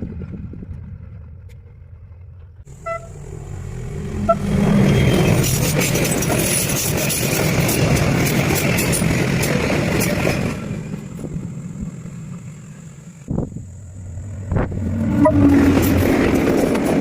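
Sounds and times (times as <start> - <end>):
loud engine-like sound with hum: 0.0 - 6.3, 11.2 - 16.5
train rumbling by: 0.0 - 17.0.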